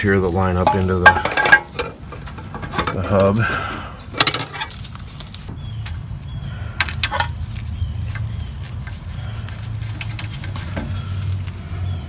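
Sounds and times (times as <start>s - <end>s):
metal clinks and knocks: 0.6s - 3.3s.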